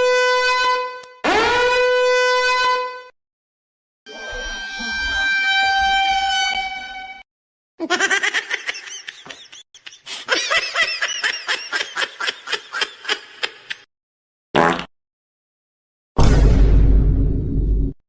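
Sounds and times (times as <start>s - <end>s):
comedy horn blare: 0.0s - 3.1s.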